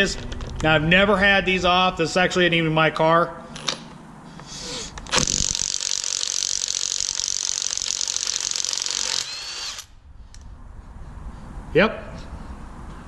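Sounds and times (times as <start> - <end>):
impact wrench spinning with whine: 4.4 - 10.0.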